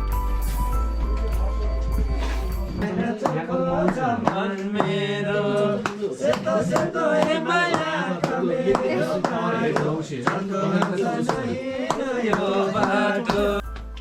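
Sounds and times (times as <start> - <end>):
hand claps: 1.1 - 14.0
group singing a devotional chant: 2.7 - 13.6.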